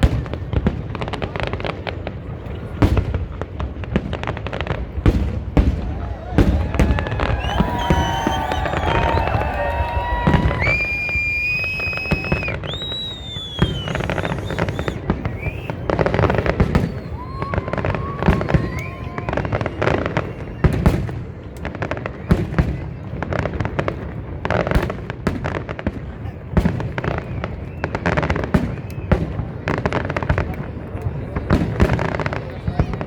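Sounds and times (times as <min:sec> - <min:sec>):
fireworks bangs and crackling: 0:00.0 - 0:33.0
fireworks whistling: 0:05.6 - 0:21.2.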